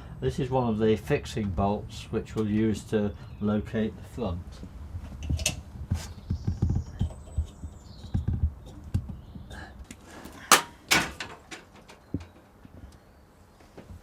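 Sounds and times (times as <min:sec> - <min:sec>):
sharp knocks: 0:10.5 - 0:11.6.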